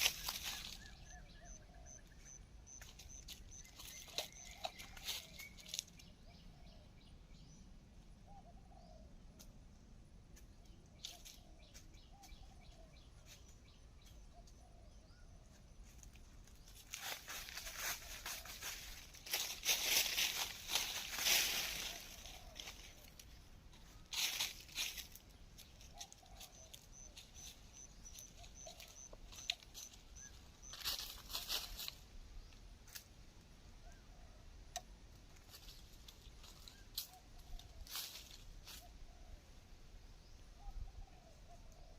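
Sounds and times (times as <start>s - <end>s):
rustling and crackling: 0.0s - 1.1s, 2.8s - 6.1s, 15.8s - 32.1s
faint bird calls: 16.7s - 32.7s.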